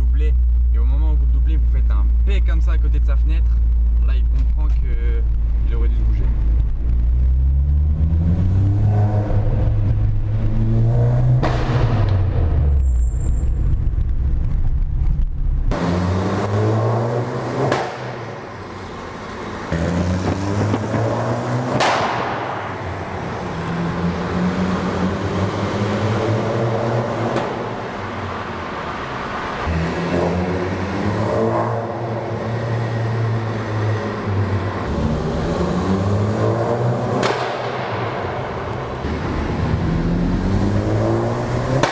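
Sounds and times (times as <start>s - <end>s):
car engine accelerating hard: 5.1s - 14.9s, 15.6s - 41.9s
sharp exhaust pops: 17.6s - 18.4s, 21.7s - 22.8s, 37.1s - 39.0s.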